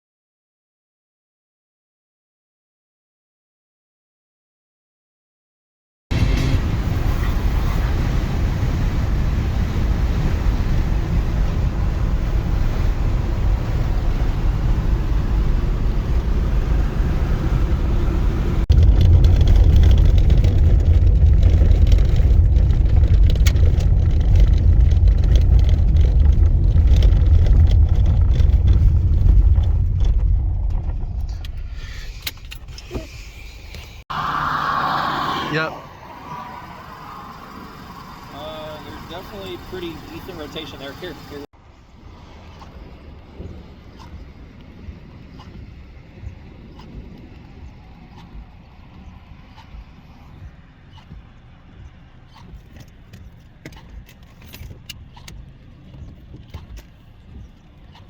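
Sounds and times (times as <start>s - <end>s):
car driving rumble: 6.1s - 58.0s.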